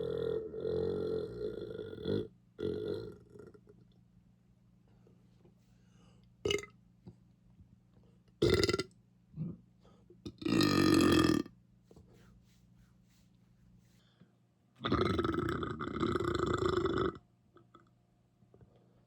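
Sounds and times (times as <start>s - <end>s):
person burping: 0.0s - 3.6s, 6.5s - 6.7s, 8.4s - 9.6s, 10.3s - 11.5s, 14.8s - 17.2s.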